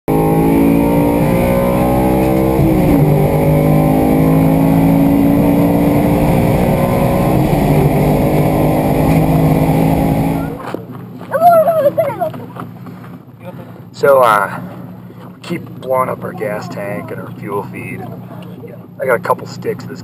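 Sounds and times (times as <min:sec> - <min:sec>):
rally car engine running hard: 0:00.1 - 0:10.6.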